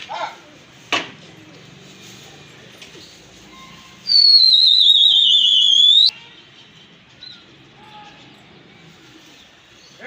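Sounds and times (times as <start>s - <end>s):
loud warbling whistle: 4.1s - 6.1s.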